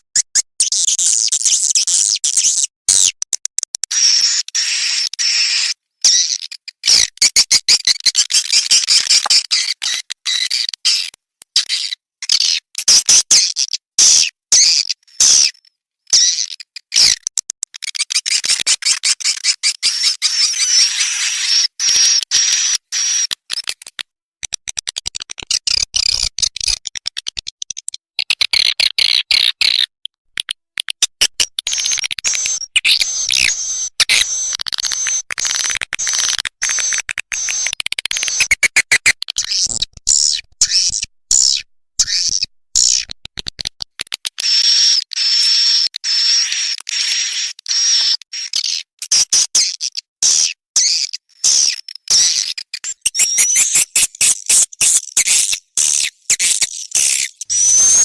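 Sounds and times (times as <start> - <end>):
swiftlet clicks and chirps: 0.2 - 12.0, 16.2 - 58.0.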